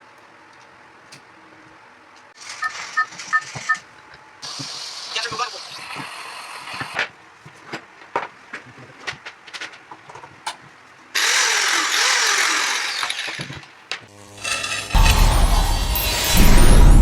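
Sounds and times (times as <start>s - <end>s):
power tool motor whining: 11.2s - 16.4s.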